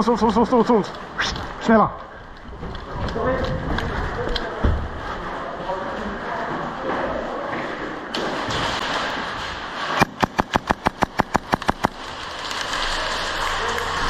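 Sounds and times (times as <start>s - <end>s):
airsoft gun rapid shots: 10.0s - 12.0s.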